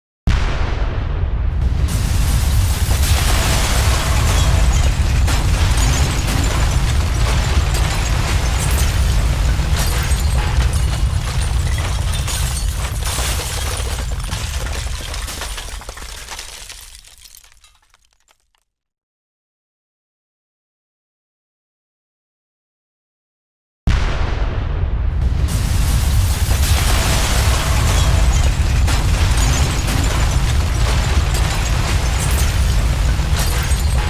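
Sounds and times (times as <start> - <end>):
falling debris crashing: 1.9 - 18.6, 25.5 - 34.0
glass shattering: 2.7 - 18.6, 26.1 - 34.0.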